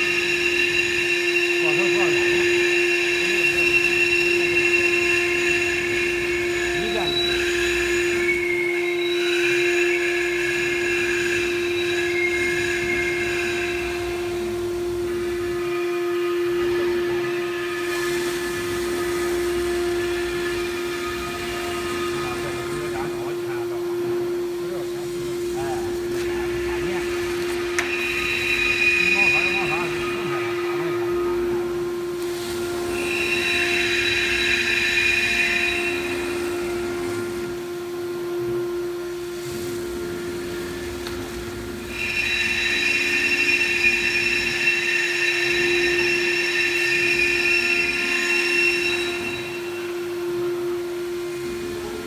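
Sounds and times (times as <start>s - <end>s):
router spindle whine: 0.0s - 52.0s
cutting hiss: 16.2s - 37.7s, 39.2s - 51.8s.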